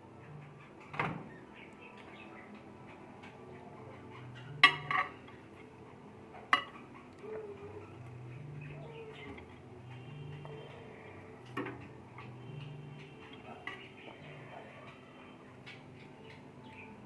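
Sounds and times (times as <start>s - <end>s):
dishes clinking: 4.5s - 5.3s.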